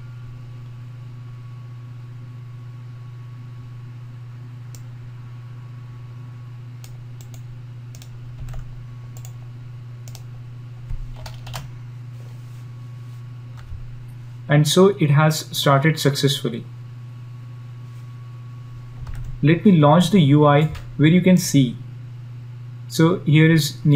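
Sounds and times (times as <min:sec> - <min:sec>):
low electrical hum: 0:00.0 - 0:23.9
keyboard clicks: 0:06.8 - 0:09.4, 0:10.0 - 0:10.3, 0:10.9 - 0:11.7.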